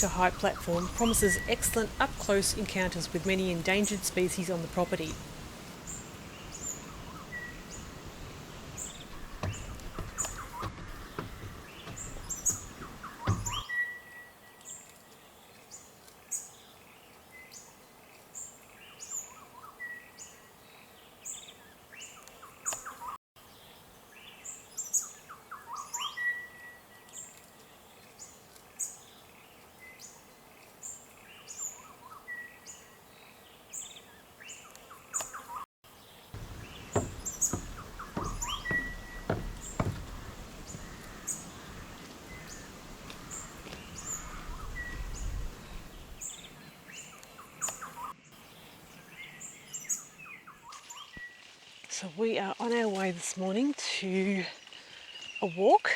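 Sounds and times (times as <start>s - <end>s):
small birds chirping: 0.0s - 55.9s
whistled bird notes: 0.3s - 1.9s, 11.7s - 14.7s, 36.6s - 42.7s.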